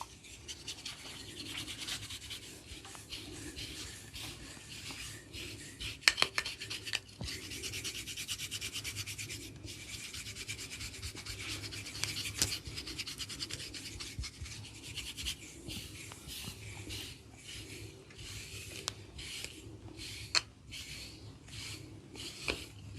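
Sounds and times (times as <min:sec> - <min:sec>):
fingers scratching scalp and hair: 0:00.0 - 0:22.9.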